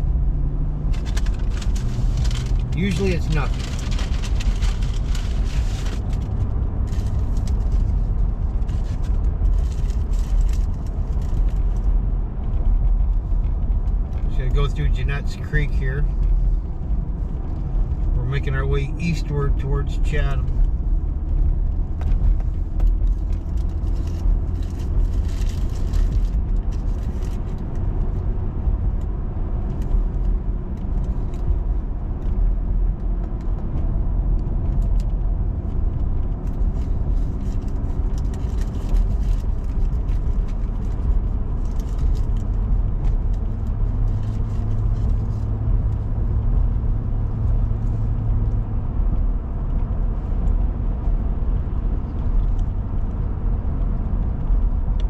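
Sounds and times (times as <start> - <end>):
car engine and tyre rumble: 0.0 - 55.0.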